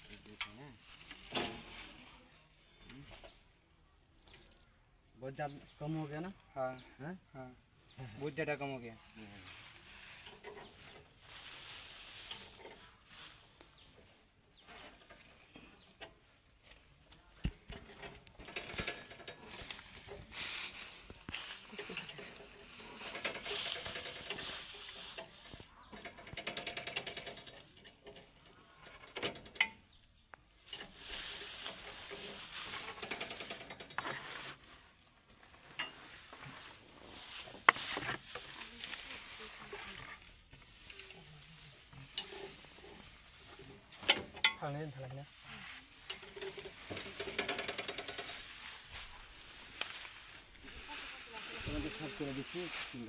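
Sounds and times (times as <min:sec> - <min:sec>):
scraping and rustling: 0:00.0 - 0:03.4, 0:08.0 - 0:53.0
tools clicking on machinery: 0:17.7 - 0:19.9, 0:21.8 - 0:29.8, 0:31.6 - 0:34.2, 0:46.1 - 0:48.6.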